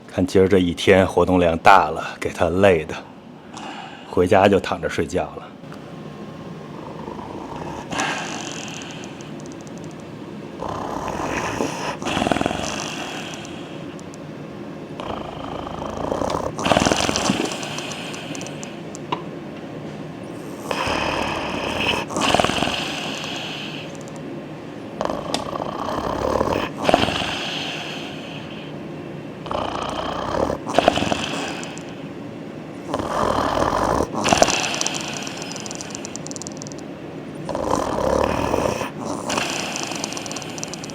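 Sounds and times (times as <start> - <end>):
dog snoring: 6.7 - 10.0, 10.6 - 14.1, 15.0 - 18.8, 20.3 - 24.2, 25.0 - 28.7, 29.4 - 32.0, 32.8 - 36.8, 37.4 - 40.9.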